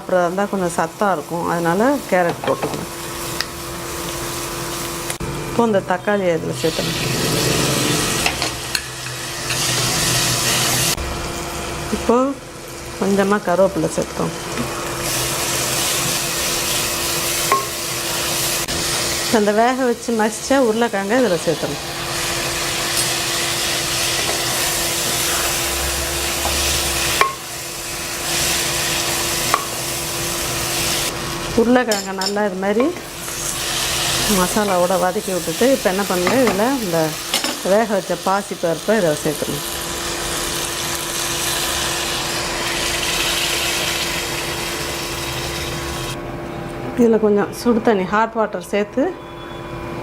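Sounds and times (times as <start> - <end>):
food sizzling in a pan: 0.0 - 5.2, 12.7 - 46.2.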